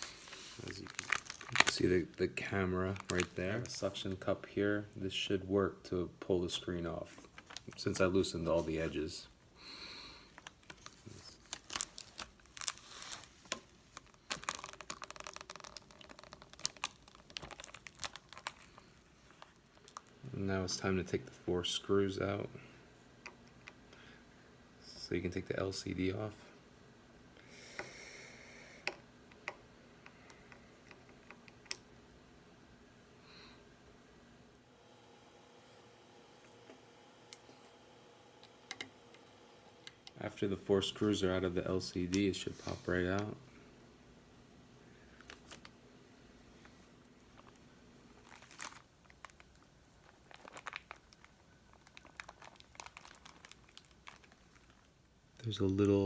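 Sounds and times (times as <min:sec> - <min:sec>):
soft scraping hiss: 0:00.0 - 0:01.0, 0:06.2 - 0:11.5, 0:39.1 - 0:43.7
plastic and tape crinkling: 0:00.0 - 0:04.3, 0:07.0 - 0:09.3, 0:10.2 - 0:21.2, 0:45.1 - 0:45.8, 0:46.6 - 0:55.9.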